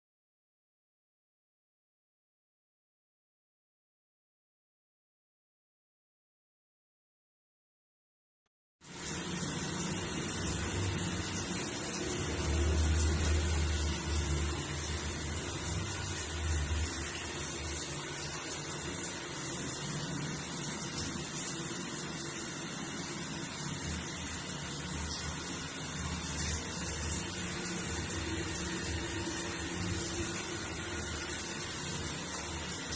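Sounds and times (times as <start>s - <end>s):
water spraying from shower head: 8.8s - 32.9s.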